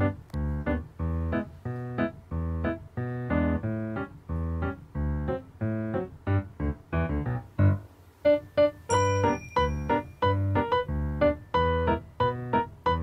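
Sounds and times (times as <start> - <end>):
keyboard tune with beat: 0.0 - 13.0.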